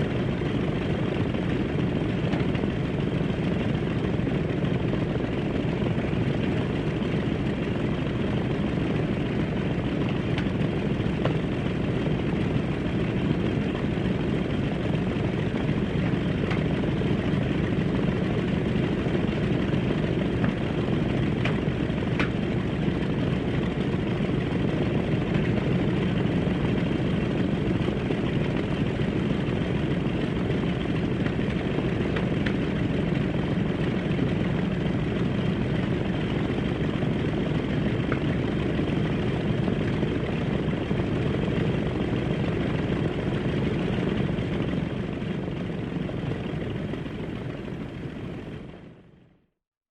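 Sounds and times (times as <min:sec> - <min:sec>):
airplane engine drone: 0:00.0 - 0:49.3.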